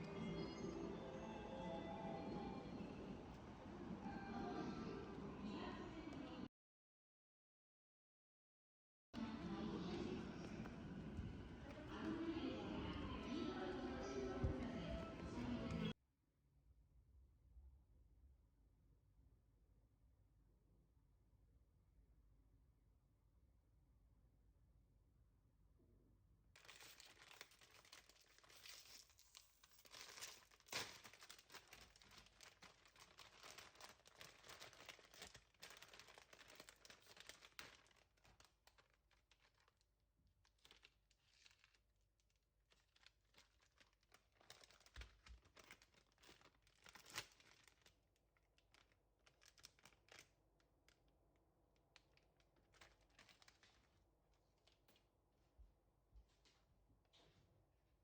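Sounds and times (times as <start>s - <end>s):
crinkling and rustling: 26.6s - 51.2s, 51.8s - 55.1s.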